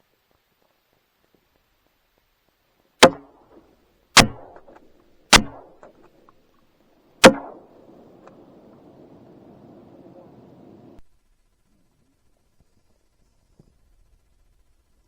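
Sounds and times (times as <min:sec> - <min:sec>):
shotgun shots: 0:03.0 - 0:03.6, 0:04.2 - 0:06.0, 0:07.2 - 0:07.9.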